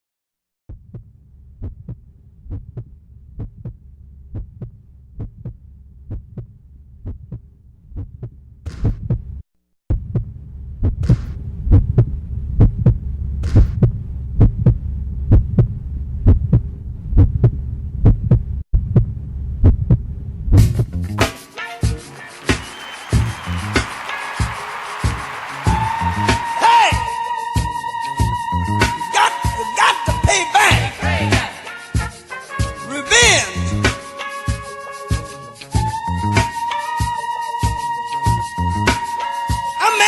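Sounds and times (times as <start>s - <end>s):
heartbeat thumps: 8.0s - 9.2s, 13.6s - 16.6s, 17.2s - 20.0s.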